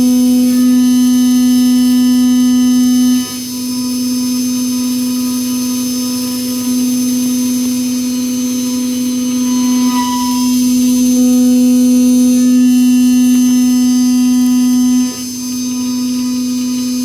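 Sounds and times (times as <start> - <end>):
milling spindle whine: 0.2 - 17.0
high ringing tones: 8.6 - 11.6.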